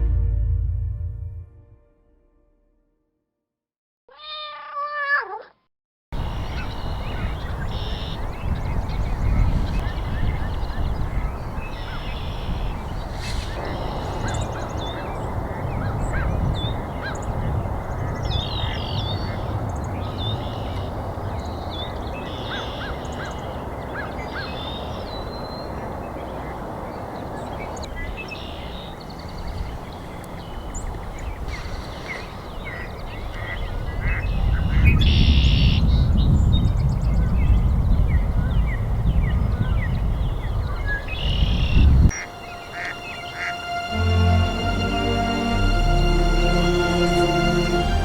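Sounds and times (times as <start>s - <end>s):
steady low rumble: 0.0s - 2.5s
pulsed trills: 0.0s - 2.6s, 42.1s - 48.0s
bird chirps: 6.2s - 16.0s.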